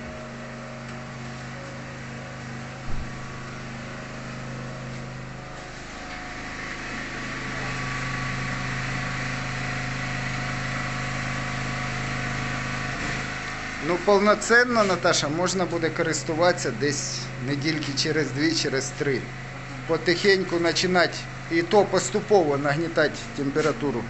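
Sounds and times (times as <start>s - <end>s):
motor-like hum: 0.0s - 24.0s
thump: 2.9s - 3.3s.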